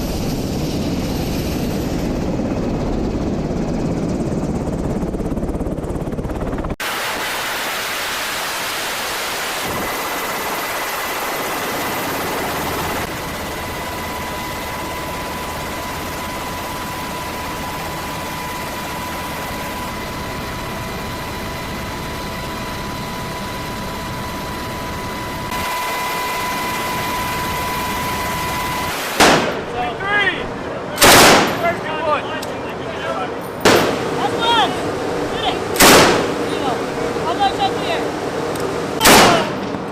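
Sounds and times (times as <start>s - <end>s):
thin high whines: 13.1s - 29.2s
loud steady rushing noise: 24.2s - 39.9s.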